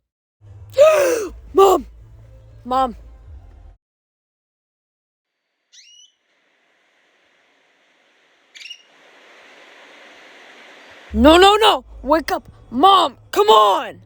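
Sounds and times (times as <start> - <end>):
short rising bird chirps: 5.7 - 6.2, 8.5 - 9.0.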